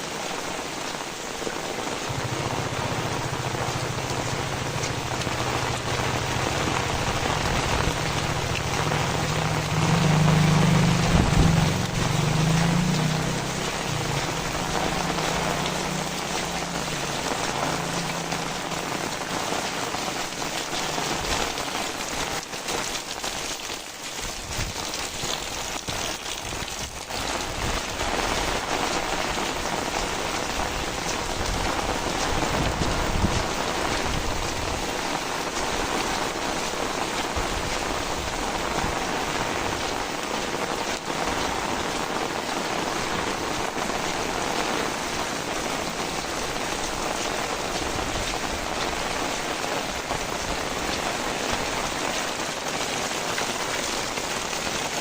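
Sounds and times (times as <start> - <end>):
heavy rain falling: 0.0 - 55.0
low hum: 2.1 - 18.7.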